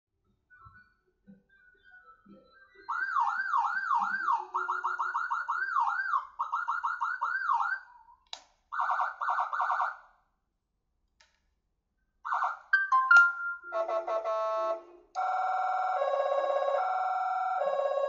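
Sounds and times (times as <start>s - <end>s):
electronic siren wail and yelp: 1.9s - 8.2s, 8.8s - 10.1s, 12.3s - 13.0s, 13.7s - 18.0s.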